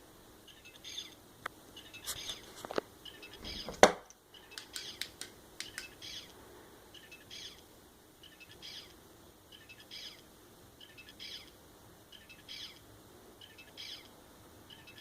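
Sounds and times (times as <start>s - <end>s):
electronic bird-like chirps: 3.1s - 3.8s, 7.0s - 7.6s, 8.2s - 10.2s, 10.8s - 11.5s, 12.1s - 12.8s, 13.4s - 14.1s, 14.7s - 15.0s
sharp click: 3.6s - 6.0s.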